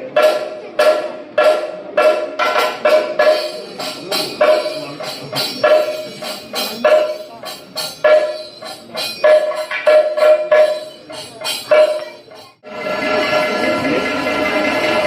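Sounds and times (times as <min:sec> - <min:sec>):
drums struck: 0:00.0 - 0:12.6
metal cymbals ringing: 0:00.0 - 0:15.0.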